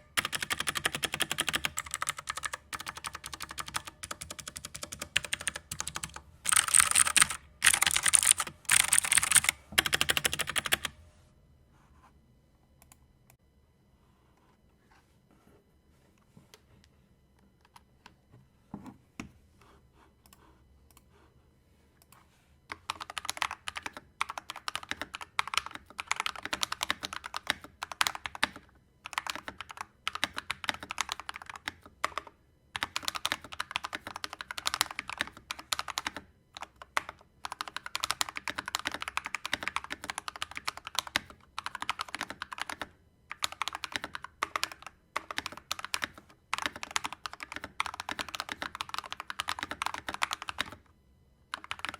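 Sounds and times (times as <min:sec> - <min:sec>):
mechanical keyboard typing: 0:00.0 - 0:11.0, 0:22.7 - 0:50.8, 0:51.5 - 0:51.9.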